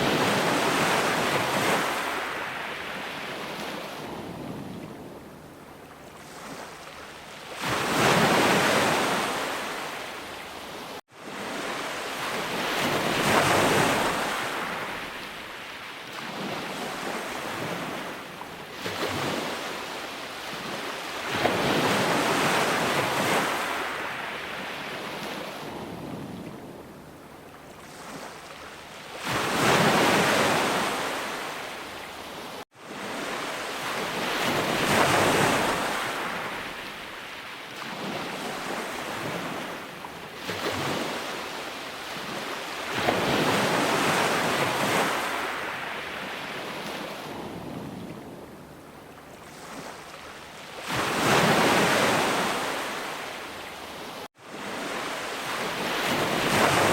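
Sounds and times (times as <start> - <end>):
sea waves breaking ashore: 0.0 - 56.9.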